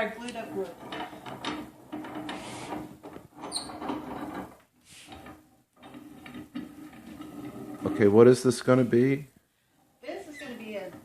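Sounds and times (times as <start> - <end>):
wooden panel scraping and rustling: 0.4 - 8.4
short squeak: 3.5 - 3.8.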